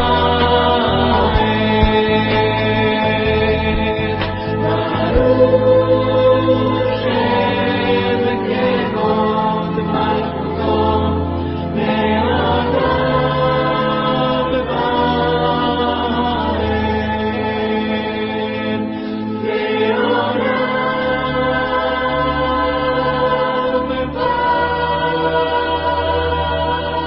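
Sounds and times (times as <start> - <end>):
low drone: 0.0 - 17.2
choir singing held chords: 0.0 - 27.0.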